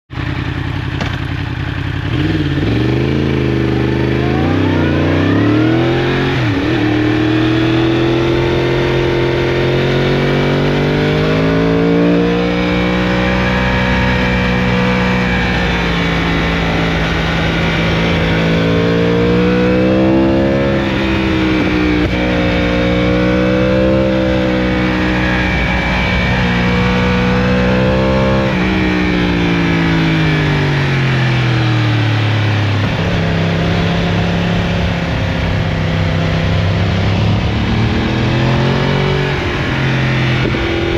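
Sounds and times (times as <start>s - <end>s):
motorcycle engine revving: 0.1s - 40.9s.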